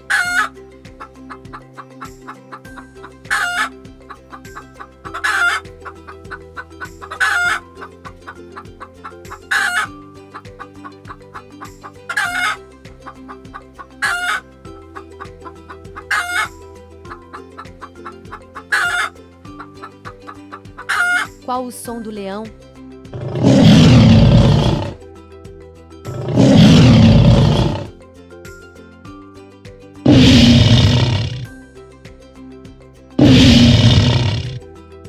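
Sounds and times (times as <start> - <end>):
chicken clucking: 0.0 - 21.3
light background music: 0.0 - 35.0.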